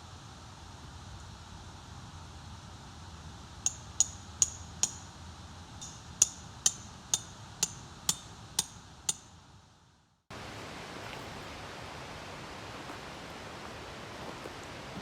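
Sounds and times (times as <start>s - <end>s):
hammer striking metal peg: 5.8s - 9.3s.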